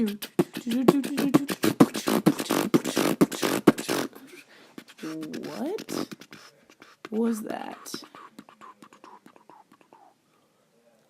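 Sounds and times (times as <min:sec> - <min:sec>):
person beatboxing: 0:00.0 - 0:10.2.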